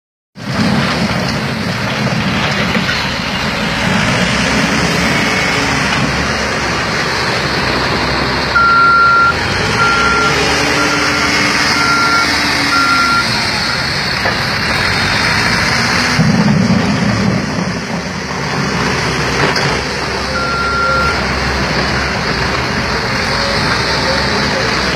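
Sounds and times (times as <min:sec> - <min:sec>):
heavy vehicle engine revving: 0:00.4 - 0:24.9
reversing alarm beeping: 0:08.6 - 0:13.9, 0:20.3 - 0:21.2.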